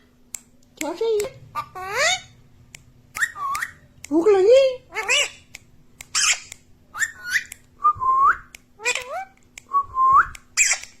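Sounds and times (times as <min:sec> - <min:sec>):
parrot whistles and chirps: 0:03.1 - 0:03.8, 0:06.2 - 0:11.0.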